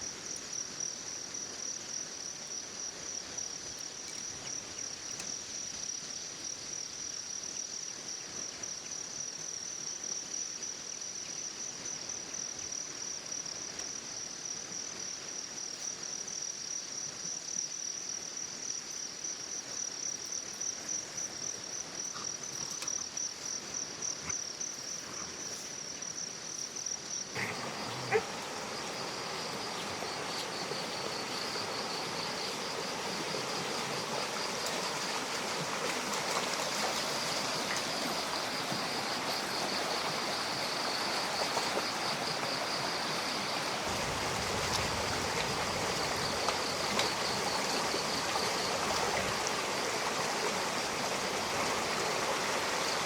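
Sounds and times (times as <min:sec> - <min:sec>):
insects chirring: 0:00.0 - 0:53.0
stream rushing: 0:27.3 - 0:53.0.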